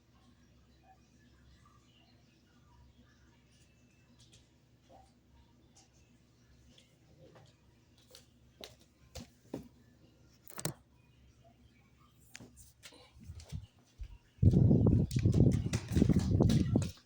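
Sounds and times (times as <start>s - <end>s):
faint clicks and taps: 12.3s - 17.0s.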